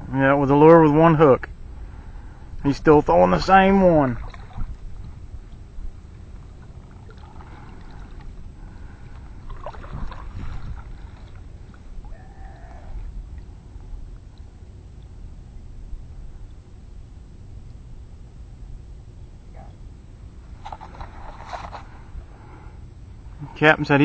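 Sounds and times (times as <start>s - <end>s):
water on open water: 0.0s - 23.7s
wind rumble: 0.0s - 23.9s.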